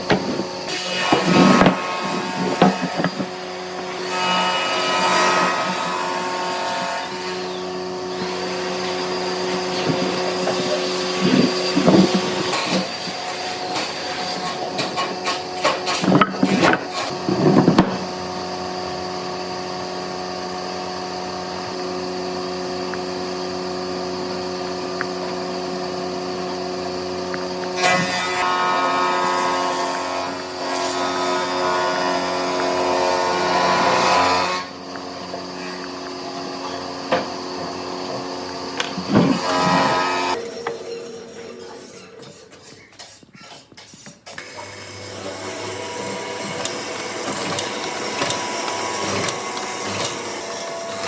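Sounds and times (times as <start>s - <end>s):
power tool motor humming: 27.4s - 41.0s, 44.3s - 51.0s
tool scraping wood: 36.6s - 51.0s.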